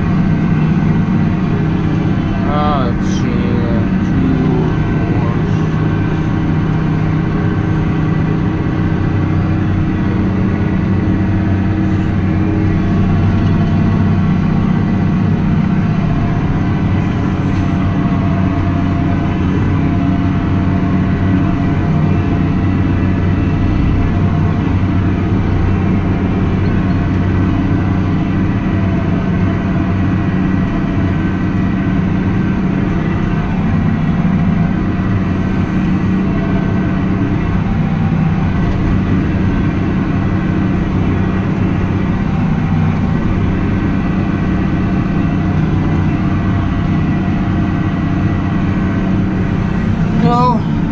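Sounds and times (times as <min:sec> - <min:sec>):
tractor engine running: 0:00.0 - 0:50.9.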